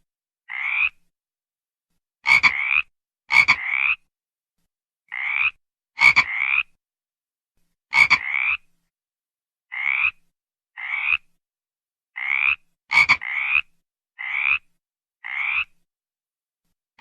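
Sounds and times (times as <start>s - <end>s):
frog rasping calls: 0.5s - 1.0s, 2.2s - 4.1s, 5.1s - 6.8s, 7.9s - 8.7s, 9.7s - 10.2s, 10.8s - 11.3s, 12.2s - 15.8s.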